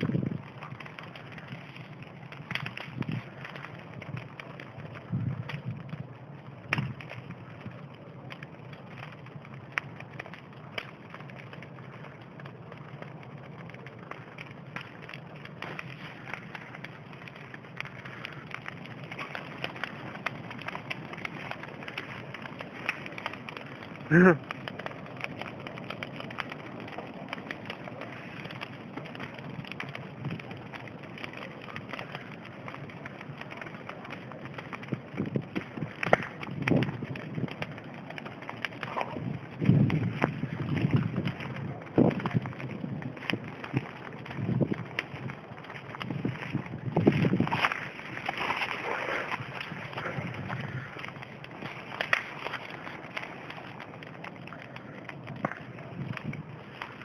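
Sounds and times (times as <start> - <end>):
fire popping sharply: 0.0 - 57.0
wood fire crackling: 0.0 - 57.0.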